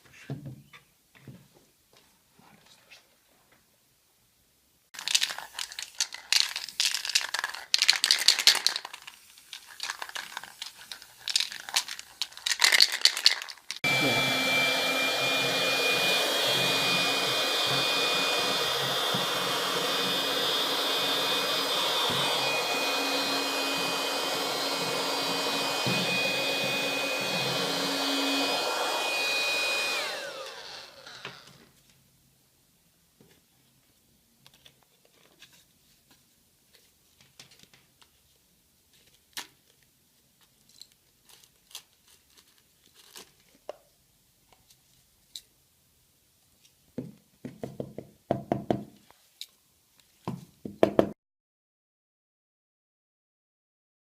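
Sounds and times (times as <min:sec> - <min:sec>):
rustling and clattering handling noise: 0:05.0 - 0:13.8, 0:33.2 - 0:43.9
small motor and fan whining: 0:13.8 - 0:31.6.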